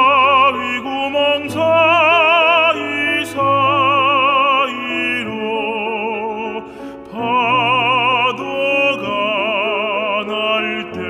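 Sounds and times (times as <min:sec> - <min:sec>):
man singing operatically: 0:00.0 - 0:11.0.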